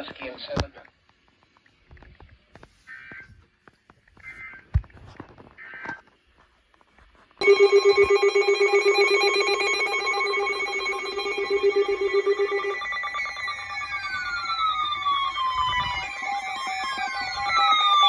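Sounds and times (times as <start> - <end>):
falling gliding tones: 7.4 - 18.0
rapidly pulsing electronic alarm: 7.4 - 18.0.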